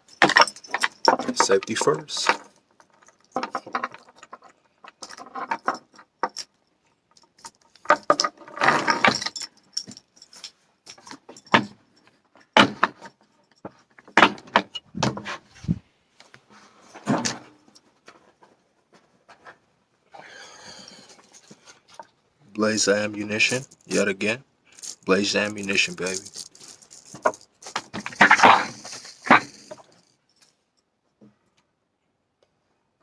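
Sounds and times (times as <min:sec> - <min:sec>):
metallic clicking and rattling: 0:00.0 - 0:14.9, 0:24.7 - 0:30.6.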